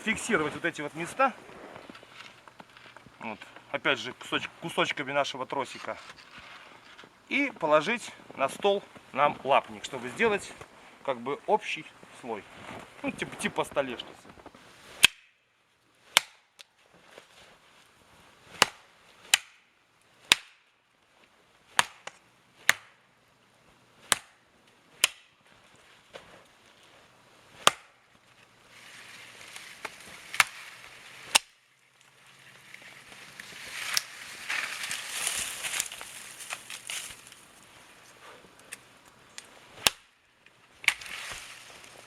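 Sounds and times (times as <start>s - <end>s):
rustle of needled boughs: 0.0s - 15.0s, 25.4s - 39.9s, 40.5s - 42.0s
boughs being chopped: 18.6s - 19.6s, 20.3s - 20.6s, 21.8s - 23.0s, 24.1s - 24.4s, 25.0s - 25.3s, 27.6s - 28.0s, 39.8s - 40.1s.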